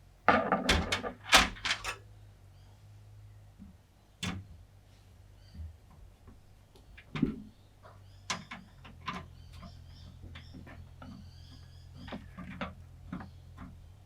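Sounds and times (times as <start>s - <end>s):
computer parts clicking and knocking: 0.3s - 2.0s.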